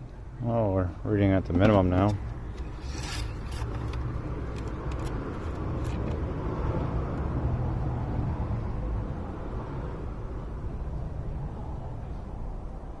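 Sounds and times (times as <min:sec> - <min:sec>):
scrapes and clicks of parts: 0:01.5 - 0:06.2.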